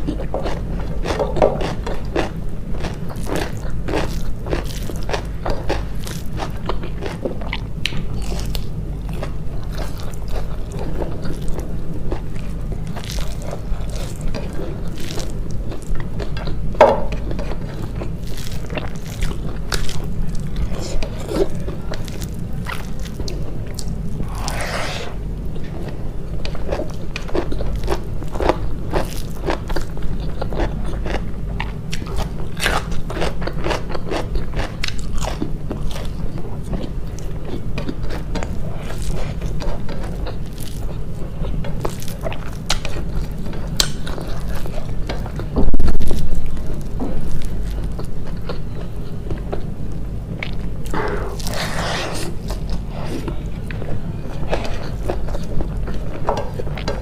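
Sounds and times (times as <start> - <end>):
low hum: 0.0 - 32.6
chewing with crunches: 0.0 - 57.0.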